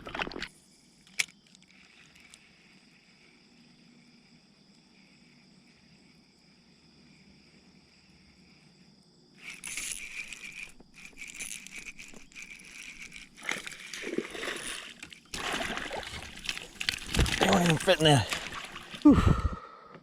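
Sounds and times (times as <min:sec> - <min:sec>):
clicking rattling clatter: 0:09.4 - 0:15.3, 0:16.2 - 0:18.9
water splashing: 0:13.3 - 0:19.3.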